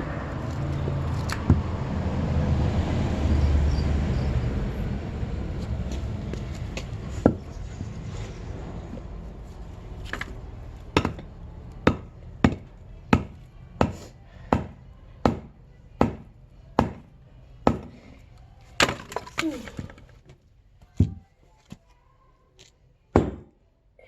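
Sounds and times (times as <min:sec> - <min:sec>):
axe chopping wood: 0:10.1 - 0:17.1, 0:17.7 - 0:18.0, 0:18.8 - 0:20.0, 0:23.2 - 0:23.5.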